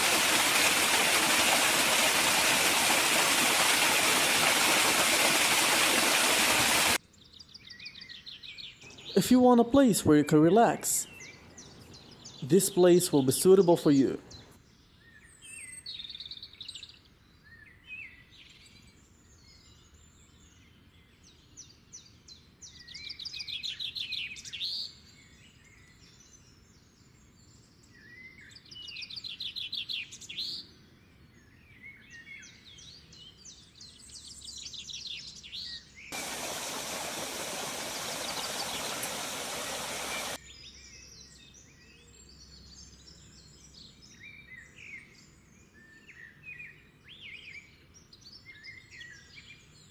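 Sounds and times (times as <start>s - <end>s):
songbirds trilling: 8.9s - 14.5s, 36.2s - 40.4s.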